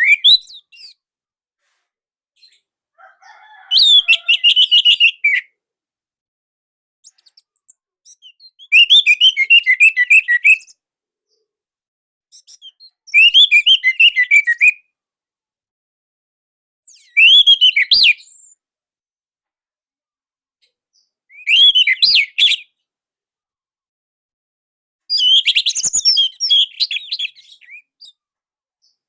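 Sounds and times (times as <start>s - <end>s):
thrush singing whistled notes: 0.0s - 0.8s, 3.7s - 5.5s, 7.1s - 10.7s, 12.3s - 14.8s, 17.0s - 18.2s, 21.3s - 22.6s, 25.1s - 27.9s.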